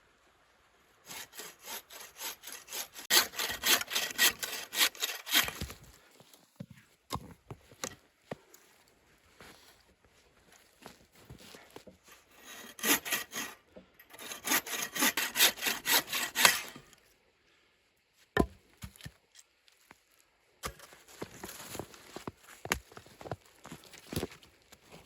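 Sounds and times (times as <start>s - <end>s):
saw cutting through wood: 1.1s - 5.7s, 12.1s - 17.0s.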